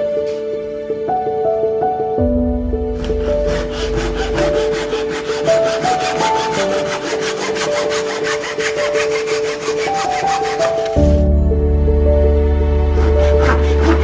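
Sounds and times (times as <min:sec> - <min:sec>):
hand tool scraping wood: 0:03.0 - 0:11.2, 0:13.0 - 0:14.0
background music with deep bass: 0:10.9 - 0:14.0.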